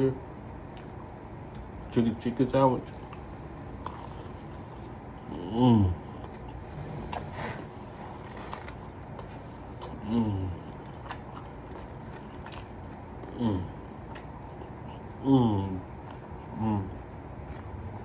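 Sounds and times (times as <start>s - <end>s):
person chewing a sandwich: 0.4s - 18.0s
crisp crunches: 7.9s - 10.0s.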